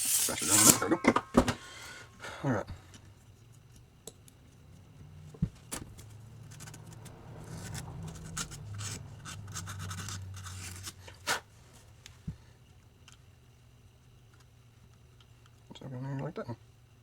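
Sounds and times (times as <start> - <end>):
rubbing and scraping: 0.0 - 1.9, 4.4 - 12.0.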